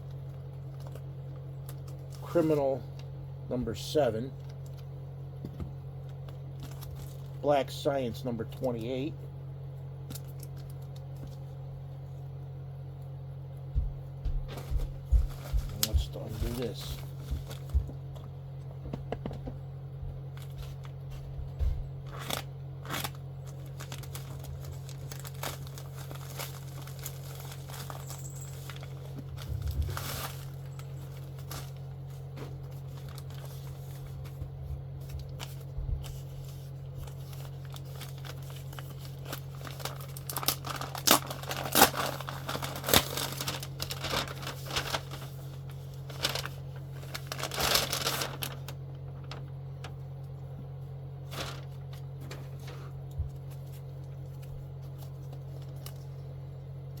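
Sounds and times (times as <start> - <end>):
packaging crinkling and tearing: 0.0 - 2.2, 6.0 - 7.5, 10.0 - 11.5, 22.0 - 50.3, 51.2 - 56.3
steady low hum: 0.0 - 57.0.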